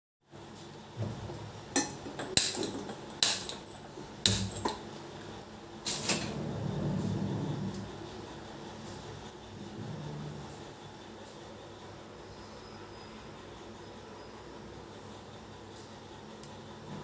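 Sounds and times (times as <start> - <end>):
metal utensils clattering: 1.8 - 4.8.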